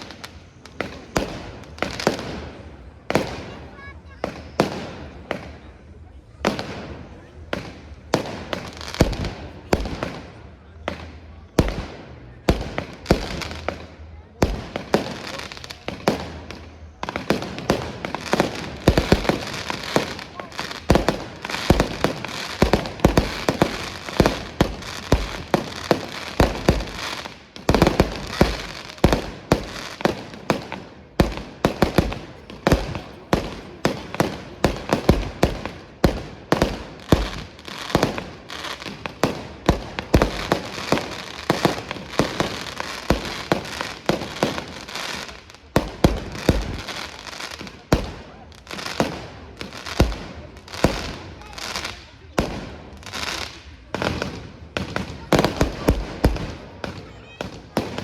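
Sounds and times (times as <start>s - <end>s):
firework crackling: 0.0s - 58.0s.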